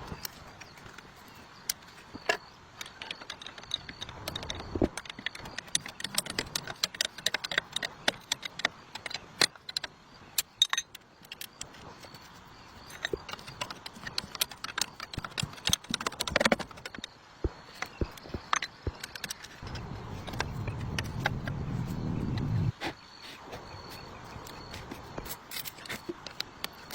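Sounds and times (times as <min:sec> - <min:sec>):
metal tools clicking and clinking: 0:02.2 - 0:11.7.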